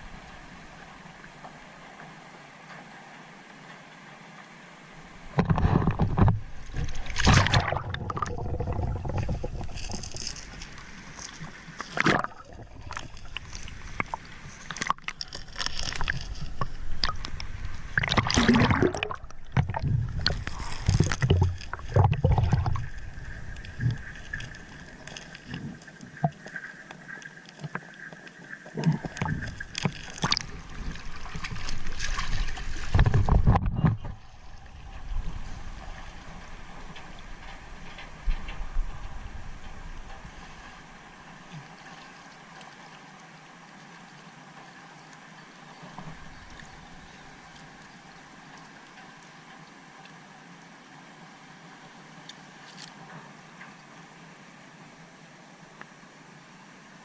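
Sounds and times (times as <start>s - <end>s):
water sloshing around boat: 0.0s - 54.2s
boat knocks and bumps: 5.3s - 7.7s.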